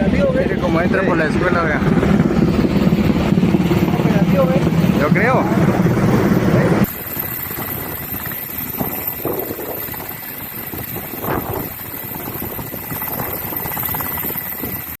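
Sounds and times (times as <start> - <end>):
helicopter rotor chopping: 0.0 - 15.0.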